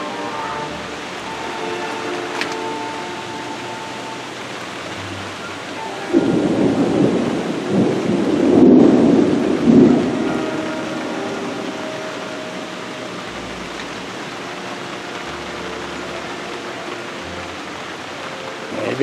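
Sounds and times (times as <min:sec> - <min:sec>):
steady rain: 0:00.0 - 0:19.0
rolling thunder: 0:05.8 - 0:13.3.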